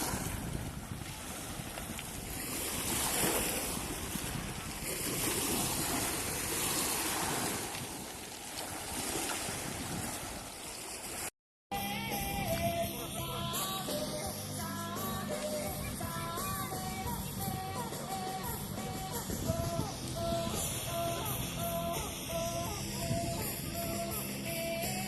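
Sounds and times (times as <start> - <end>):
wind buffeting microphone: 0.0 - 8.3, 8.9 - 10.5, 15.7 - 24.2
waves washing on stony shore: 0.0 - 11.3
music: 11.7 - 25.0.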